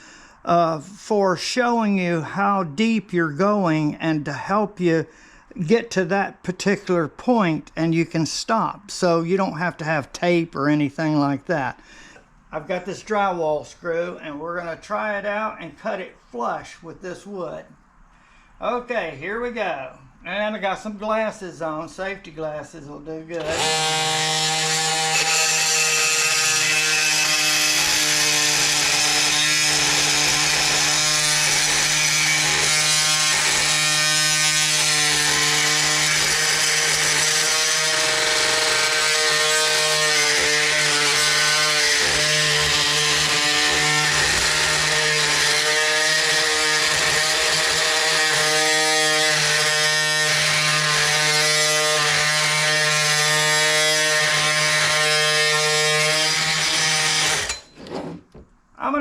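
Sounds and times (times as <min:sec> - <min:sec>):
multi-tool cutting screw in wood: 0:23.3 - 0:58.4.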